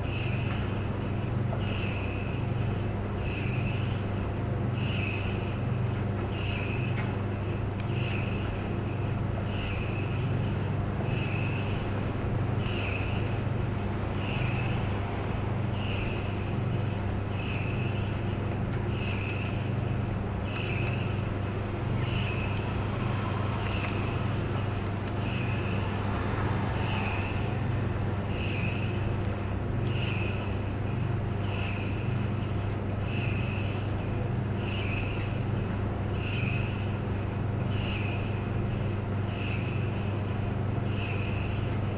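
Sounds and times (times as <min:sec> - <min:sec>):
dryer motor hum: 0:00.0 - 0:41.9
faint ticks: 0:00.1 - 0:02.0, 0:04.8 - 0:14.8, 0:23.6 - 0:26.2, 0:31.2 - 0:35.4.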